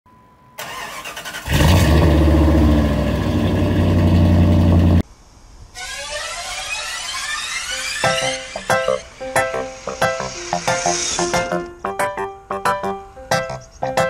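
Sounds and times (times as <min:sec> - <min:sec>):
engine starting and running: 0:00.6 - 0:05.0
rising sweeping tones: 0:05.8 - 0:12.3.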